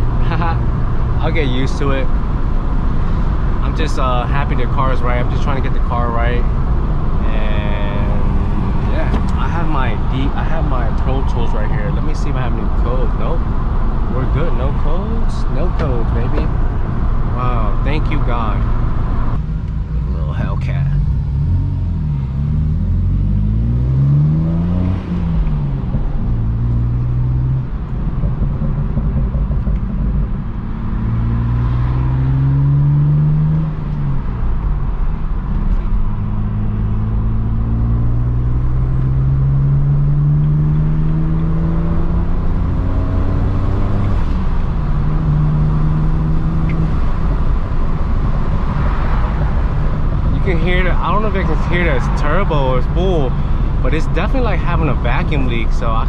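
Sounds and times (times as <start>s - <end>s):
car engine revving through gears: 0.0s - 56.0s.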